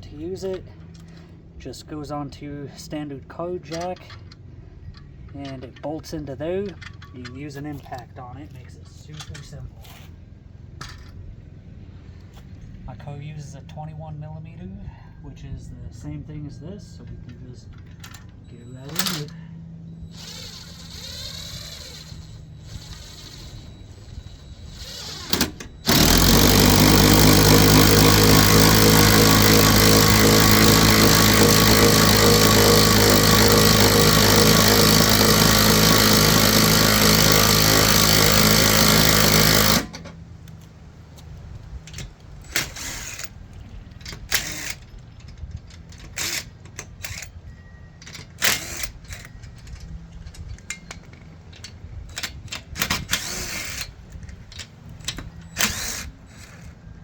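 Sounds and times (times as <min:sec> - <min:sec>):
tools clicking and knocking: 0:06.7 - 0:07.4, 0:25.2 - 0:40.2, 0:48.0 - 0:56.8
impact wrench hammering: 0:25.3 - 0:40.1.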